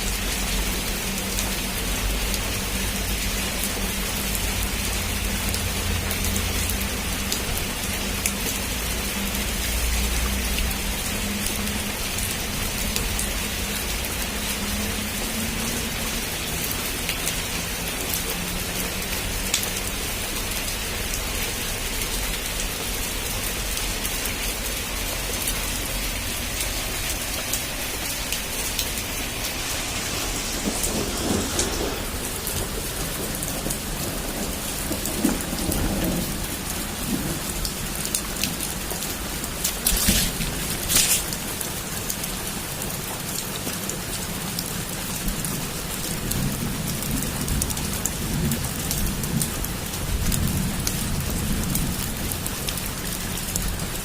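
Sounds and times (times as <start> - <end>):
heavy rain falling: 0.0 - 54.0
thunder rumbling: 25.9 - 41.8.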